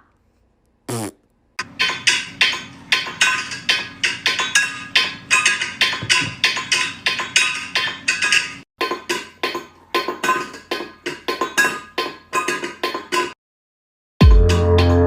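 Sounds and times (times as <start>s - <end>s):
percussive clinking music: 1.6s - 13.4s.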